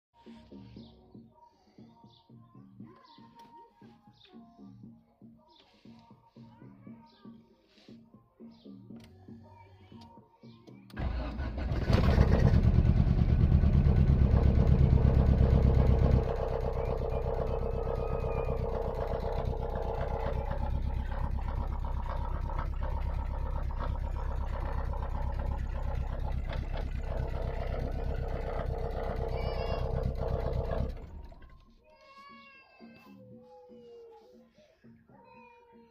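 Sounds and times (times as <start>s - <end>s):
car engine starting and idling: 10.9s - 31.7s.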